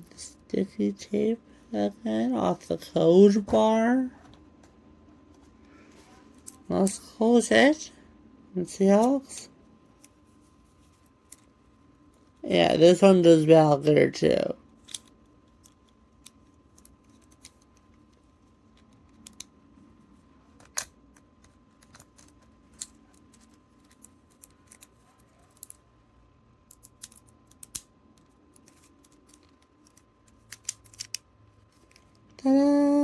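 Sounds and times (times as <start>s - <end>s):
plastic toy clicking and snapping: 14.8s - 17.8s, 18.8s - 19.6s, 26.6s - 31.3s.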